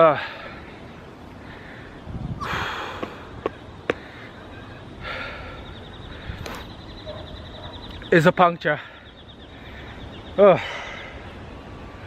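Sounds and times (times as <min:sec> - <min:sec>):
person breathing hard: 0:01.4 - 0:04.4, 0:05.0 - 0:06.5.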